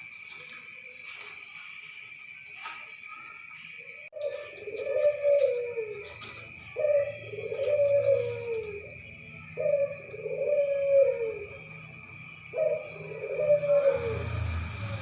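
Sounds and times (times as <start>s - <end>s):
dove cooing: 3.6s - 15.0s.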